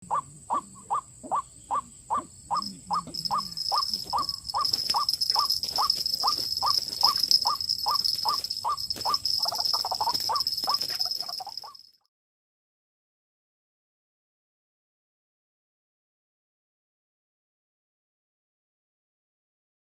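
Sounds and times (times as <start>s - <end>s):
waterhen calling: 0.1s - 11.8s
high-pitched drone: 2.6s - 11.7s.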